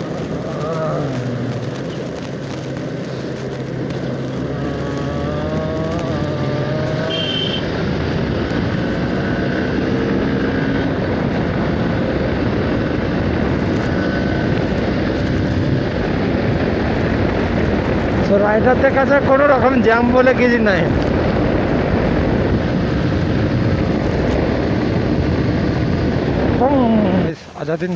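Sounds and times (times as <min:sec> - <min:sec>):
motorcycle engine revving: 0:00.0 - 0:27.4.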